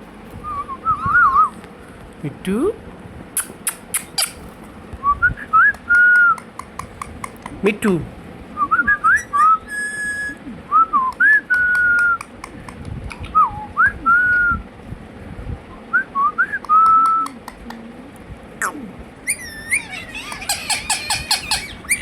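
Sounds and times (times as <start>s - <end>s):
parrot whistling: 3.4s - 4.4s, 8.6s - 12.3s, 19.2s - 22.0s.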